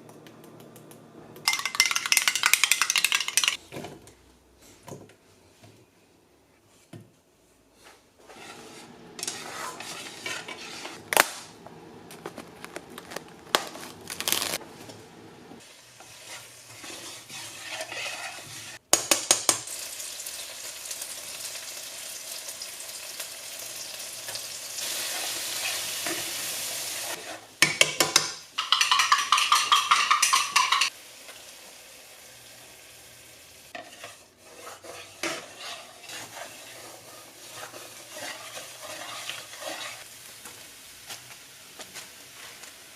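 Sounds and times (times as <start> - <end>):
utensils clinking on pans: 1.5 - 3.6, 27.1 - 31.0
rapid strokes on cookware: 7.8 - 11.1, 15.6 - 18.8, 26.9 - 27.6, 28.6 - 30.9, 33.7 - 40.1
food sizzling in frying pan: 12.8 - 18.8, 19.5 - 27.4, 28.6 - 42.9.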